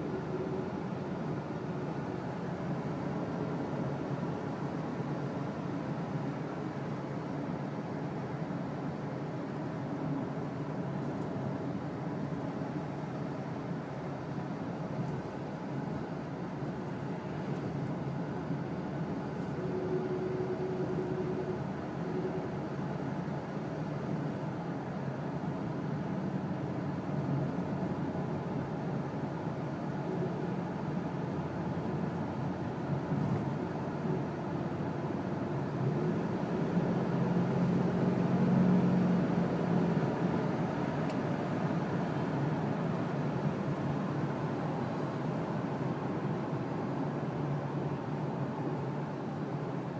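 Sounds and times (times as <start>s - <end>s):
faint steady tone: 0.0s - 25.8s
pickup truck engine and road hum: 0.0s - 49.9s.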